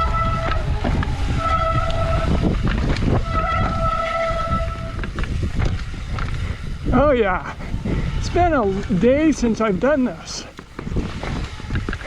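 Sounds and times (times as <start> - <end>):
disc brakes squealing: 0.0 - 5.0
bike rolling on rough trail: 0.0 - 12.0.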